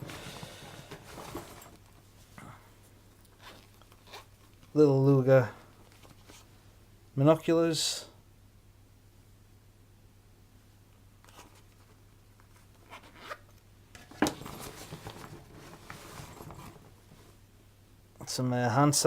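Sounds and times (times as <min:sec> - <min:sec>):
rustling and scraping: 0:00.0 - 0:04.8, 0:05.5 - 0:06.6, 0:11.2 - 0:17.4.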